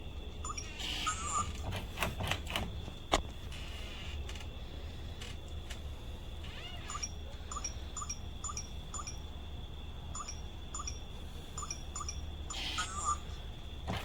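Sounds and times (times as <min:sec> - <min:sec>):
small bird chirping: 0:06.5 - 0:09.3, 0:10.1 - 0:13.5.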